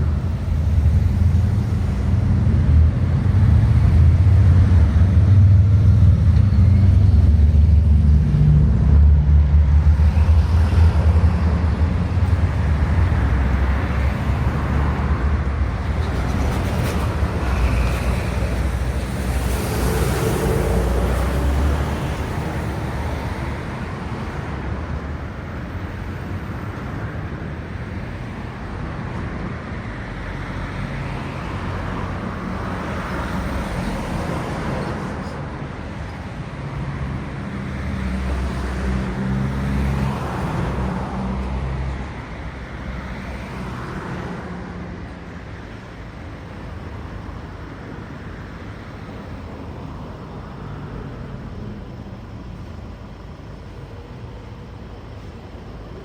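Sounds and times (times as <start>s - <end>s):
deep engine drone: 0.0s - 16.1s
steady traffic hum: 0.0s - 56.0s.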